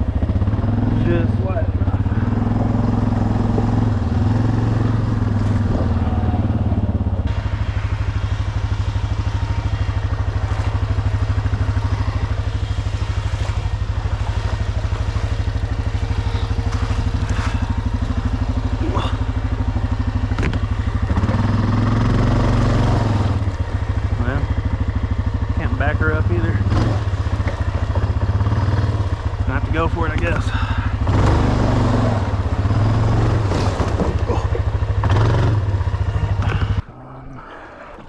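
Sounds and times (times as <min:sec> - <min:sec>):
atv engine running: 0:00.0 - 0:38.0
trailer knocks and rattles: 0:32.3 - 0:35.6.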